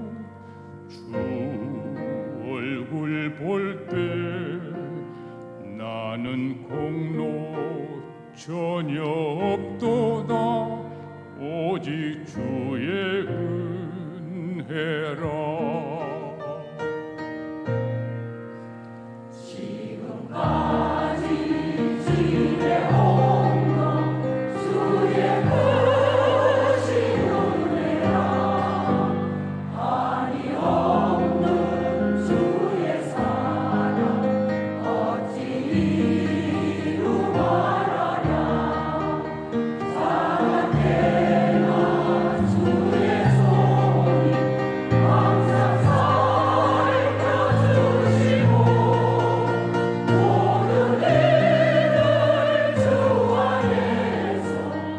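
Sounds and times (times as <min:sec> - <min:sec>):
choir singing a hymn: 0:00.0 - 0:16.8, 0:18.6 - 0:54.9.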